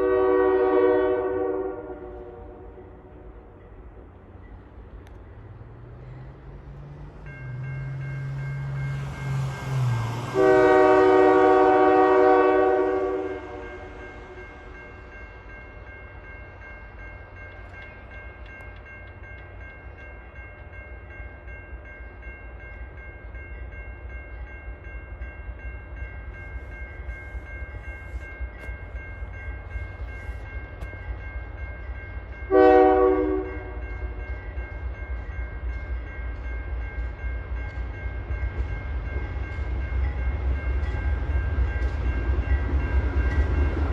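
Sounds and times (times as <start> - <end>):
locomotive air horn: 0.0 - 2.8, 10.3 - 14.0, 32.5 - 33.8
passing train rumble: 0.0 - 43.9.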